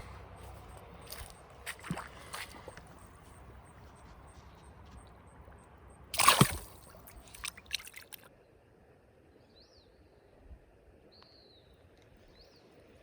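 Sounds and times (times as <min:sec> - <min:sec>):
bird chirp: 0:00.0 - 0:07.4
fish splashing into water: 0:01.0 - 0:03.0, 0:06.1 - 0:08.3.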